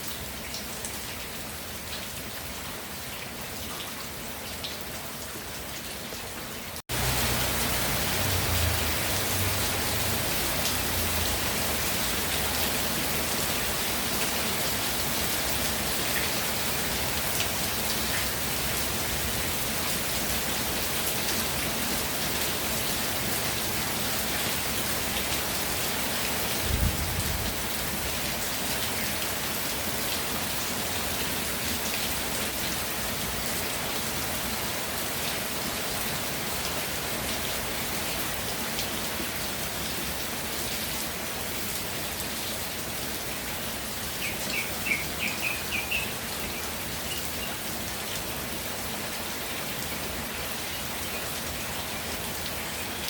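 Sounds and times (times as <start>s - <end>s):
steady rain falling: 0.0s - 53.0s
bird chirping: 44.2s - 47.6s.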